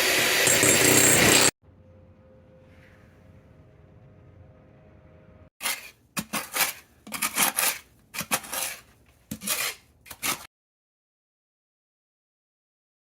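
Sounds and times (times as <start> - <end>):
hard objects clattering and scraping: 0.4 - 1.5, 5.6 - 10.5.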